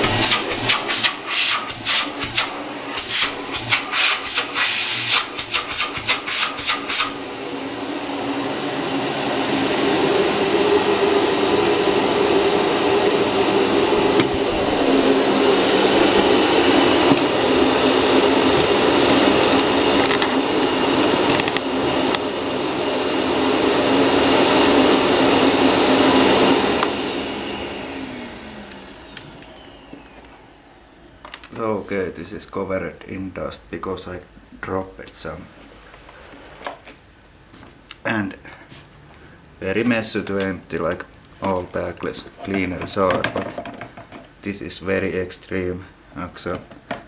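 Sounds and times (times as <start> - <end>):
vacuum cleaner motor: 0.0 - 31.8.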